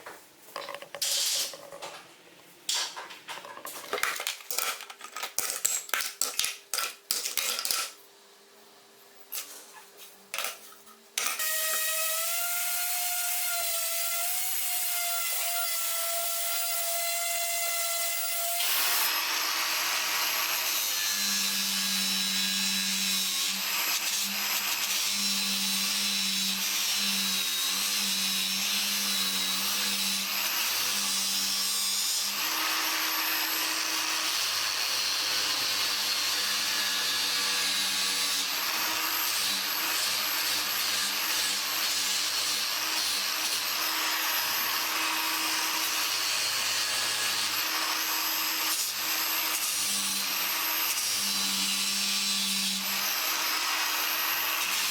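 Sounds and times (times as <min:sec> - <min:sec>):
tools and parts knocking: 0:00.6 - 0:02.0.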